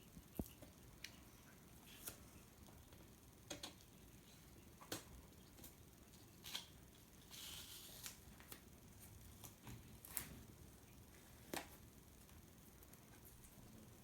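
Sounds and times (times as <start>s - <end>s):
protective film peeling rustle: 6.4s - 8.7s.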